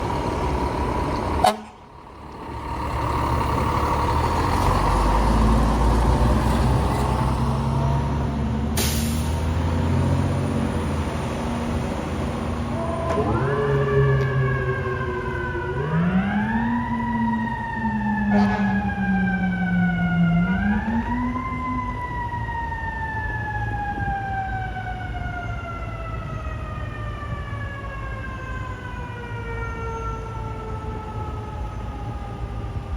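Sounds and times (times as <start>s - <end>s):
diesel engine rumbling: 0.0s - 32.9s
brief hiss: 8.8s - 9.4s.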